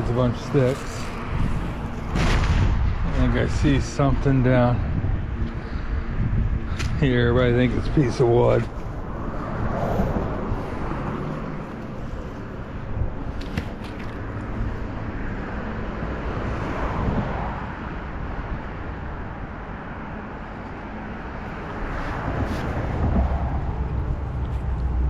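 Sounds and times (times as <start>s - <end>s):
cars passing on road: 0.0s - 25.0s.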